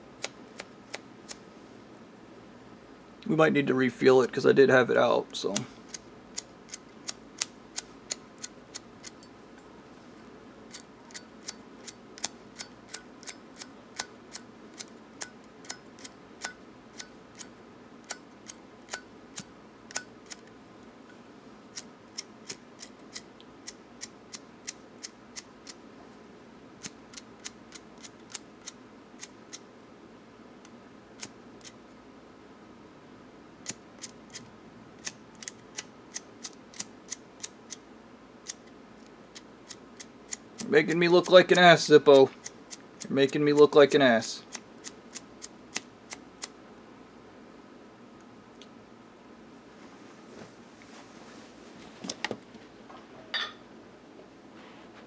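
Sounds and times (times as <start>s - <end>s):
lighter flint wheel clicks: 5.6s - 9.3s, 10.7s - 20.5s, 33.6s - 37.8s.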